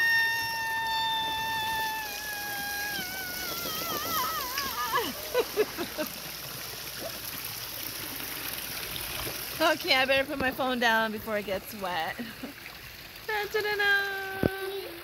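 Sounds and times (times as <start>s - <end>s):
high-pitched wavering vocal squeals: 0.0s - 5.2s
small waterfall rushing: 0.0s - 15.0s.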